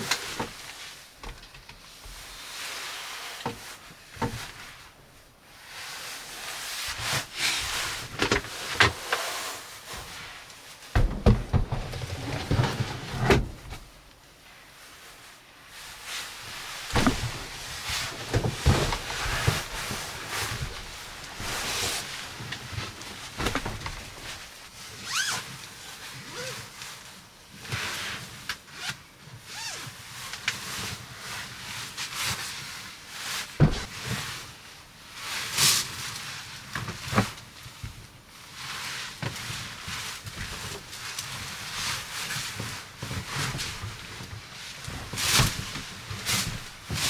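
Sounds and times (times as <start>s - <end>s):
camping gear rustling and knocking: 9.9s - 14.1s, 15.8s - 25.3s, 33.6s - 34.1s, 40.4s - 47.0s.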